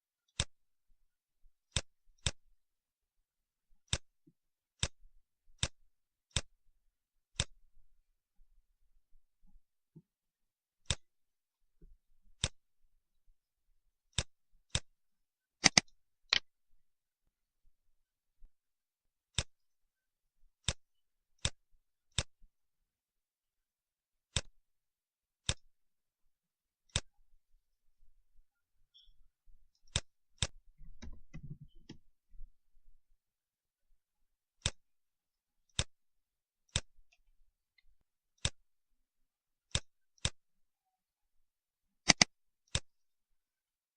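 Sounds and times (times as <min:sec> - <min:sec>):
computer mouse clicking: 0:00.3 - 0:00.6, 0:01.7 - 0:02.4, 0:03.8 - 0:06.6, 0:07.3 - 0:07.6, 0:10.8 - 0:11.1, 0:12.4 - 0:12.6, 0:14.1 - 0:14.9, 0:15.6 - 0:16.5, 0:19.3 - 0:19.6, 0:20.6 - 0:20.8, 0:21.4 - 0:22.4, 0:24.3 - 0:24.6, 0:25.4 - 0:25.7, 0:26.8 - 0:27.2, 0:29.8 - 0:32.1, 0:34.6 - 0:34.8, 0:35.7 - 0:36.0, 0:36.7 - 0:38.6, 0:39.7 - 0:40.4, 0:42.0 - 0:43.0.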